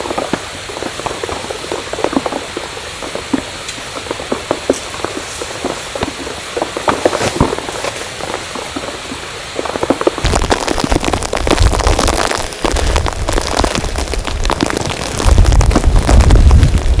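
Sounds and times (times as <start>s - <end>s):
rain pattering: 0.0s - 17.0s
wind rumble on microphone: 10.2s - 17.0s.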